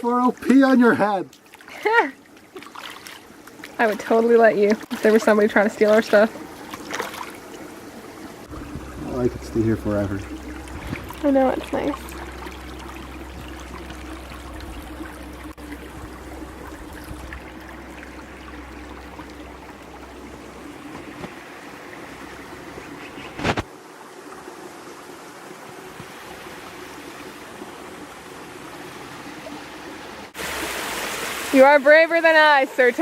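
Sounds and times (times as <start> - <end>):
stream rushing over rocks: 0.3 - 33.0.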